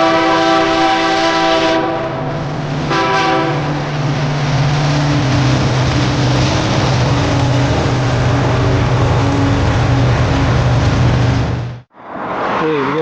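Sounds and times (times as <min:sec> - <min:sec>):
train air horn blast: 0:00.0 - 0:02.2, 0:02.9 - 0:03.7
diesel locomotive drone: 0:00.0 - 0:13.0.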